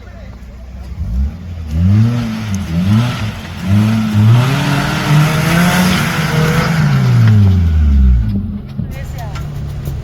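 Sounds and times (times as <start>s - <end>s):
off-road vehicle engine revving: 0.0s - 10.0s
rushing noise: 1.8s - 8.3s.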